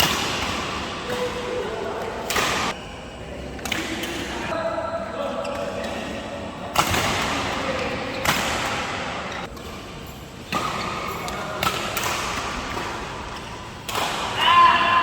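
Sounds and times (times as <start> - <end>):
racket hitting shuttlecock: 0.0 - 2.8, 6.7 - 9.7, 10.5 - 15.0.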